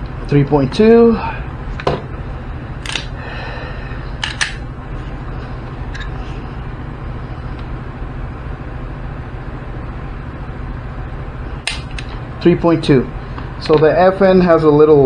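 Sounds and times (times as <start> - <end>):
steady low hum: 0.0 - 15.0
pistol metallic clicks: 11.7 - 12.1.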